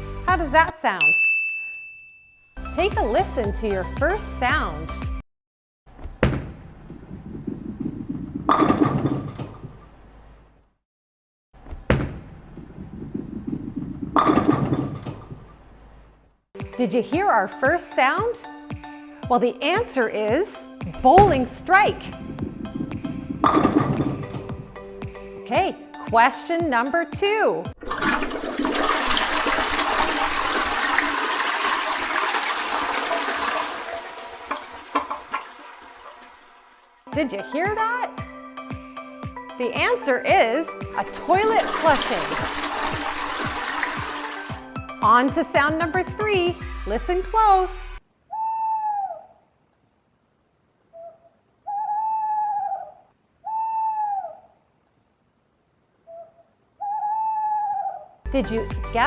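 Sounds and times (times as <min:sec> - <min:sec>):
toilet flushing: 0:27.8 - 0:37.1, 0:41.0 - 0:44.8
owl hooting: 0:48.3 - 0:49.4, 0:50.9 - 0:54.6, 0:56.0 - 0:58.2.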